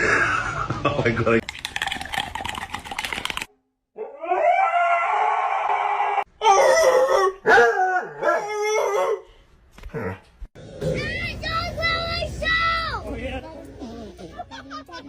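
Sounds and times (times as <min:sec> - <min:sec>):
dog howling: 0:04.0 - 0:09.2.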